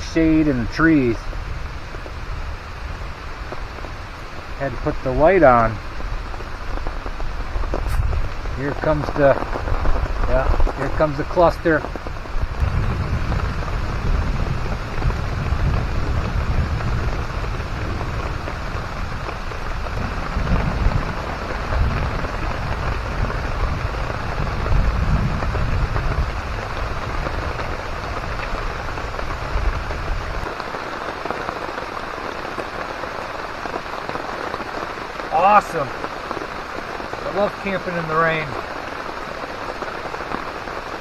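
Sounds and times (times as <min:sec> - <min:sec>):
heavy rain pouring: 0:00.0 - 0:41.0
deep thunder rumble: 0:04.6 - 0:30.6.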